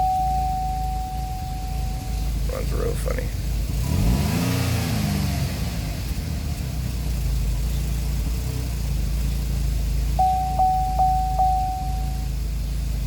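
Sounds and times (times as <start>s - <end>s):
steady high tone: 0.0s - 2.4s, 10.2s - 12.4s
car engine revving and running: 0.0s - 13.0s.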